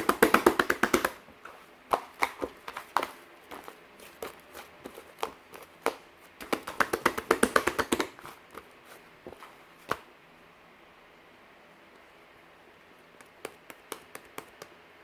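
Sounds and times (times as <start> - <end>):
sharp taps and clicks: 0.0 - 1.2, 5.2 - 8.2, 13.2 - 14.8.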